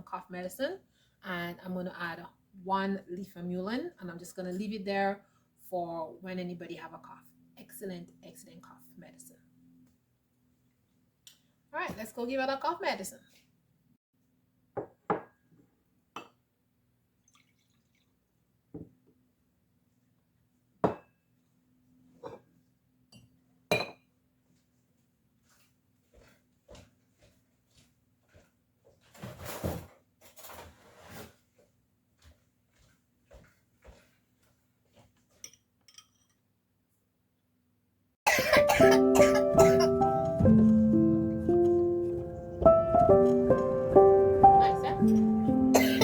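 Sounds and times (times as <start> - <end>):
child coughing: 38.3 - 40.0, 45.7 - 46.0
background music: 38.3 - 46.0.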